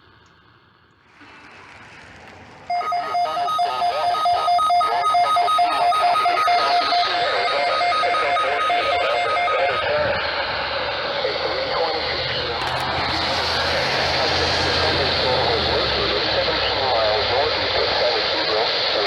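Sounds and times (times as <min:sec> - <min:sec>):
pulsed two-tone electronic alert: 0:02.7 - 0:13.4.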